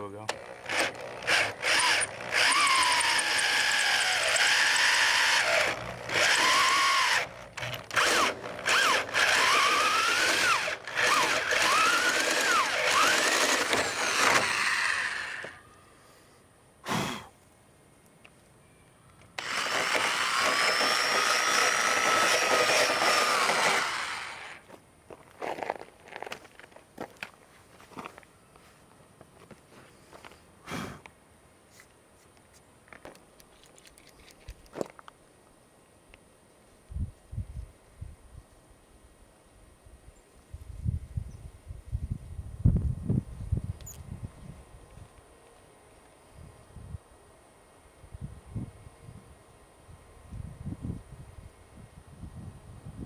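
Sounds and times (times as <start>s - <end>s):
drill click: 0.3s - 15.6s, 19.3s - 24.6s
power drill boring through metal: 0.3s - 15.6s, 19.4s - 24.6s.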